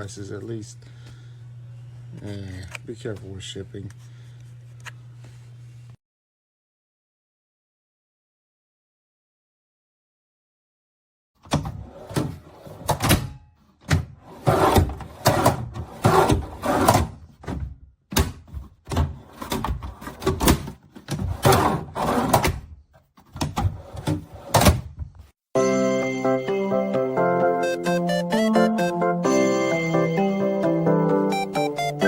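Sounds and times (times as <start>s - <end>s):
plastic tool box drawers clattering: 11.6s - 17.7s, 18.4s - 22.6s.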